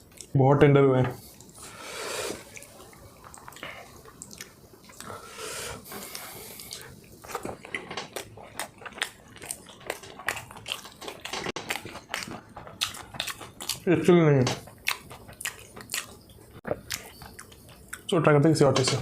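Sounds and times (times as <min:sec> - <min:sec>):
person chewing wetly: 0:02.2 - 0:05.2, 0:05.9 - 0:13.9, 0:14.6 - 0:18.2.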